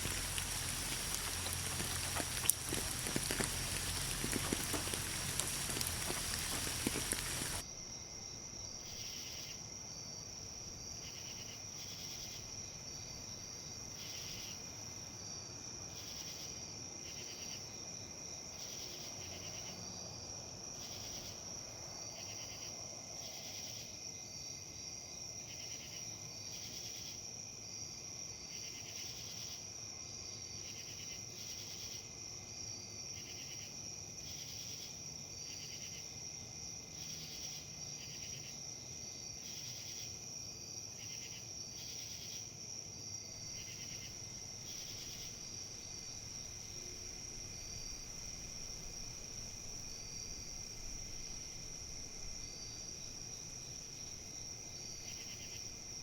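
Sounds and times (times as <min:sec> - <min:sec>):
trilled insect chirp: 0:00.0 - 0:07.6, 0:43.1 - 0:56.0
faint background hiss: 0:00.0 - 0:07.9, 0:33.7 - 0:56.0
insects droning: 0:00.0 - 0:56.0.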